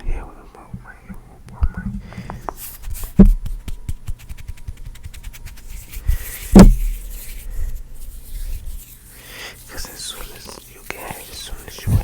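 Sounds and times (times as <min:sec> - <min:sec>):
rubbing and scratching on microphone: 0:01.6 - 0:12.0
deep thumps: 0:03.1 - 0:04.0, 0:06.5 - 0:07.0.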